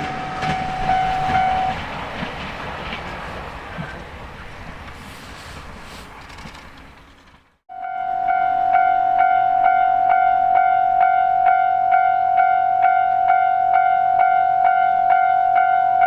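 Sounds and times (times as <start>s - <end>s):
level crossing warning bell: 0.0s - 2.4s, 7.7s - 16.0s.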